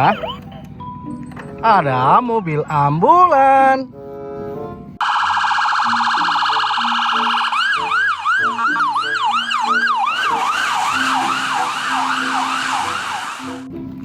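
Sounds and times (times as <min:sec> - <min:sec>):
simple electronic tune: 0:00.0 - 0:01.7, 0:05.0 - 0:10.4
toy electronic siren: 0:05.0 - 0:13.7.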